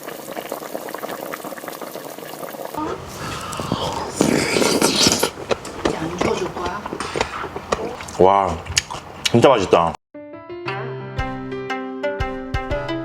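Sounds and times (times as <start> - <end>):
liquid bubbling in a pot: 0.0 - 8.2.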